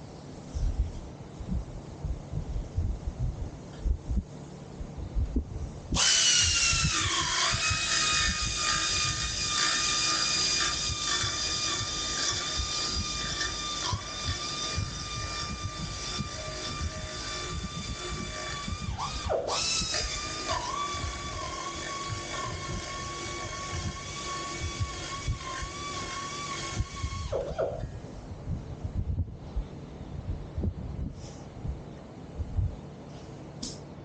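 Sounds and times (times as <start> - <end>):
electric power tool whining: 5.9 - 28.0.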